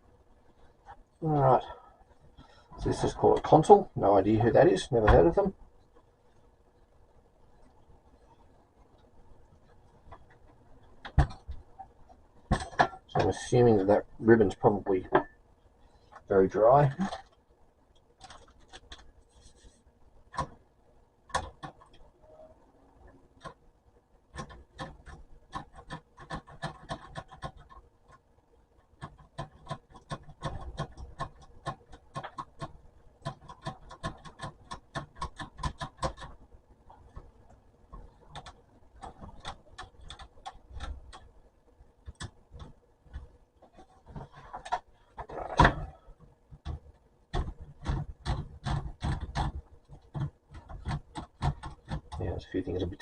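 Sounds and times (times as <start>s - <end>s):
manual typewriter keys clacking: 24.4s - 28.2s, 29.0s - 36.4s, 47.3s - 52.2s.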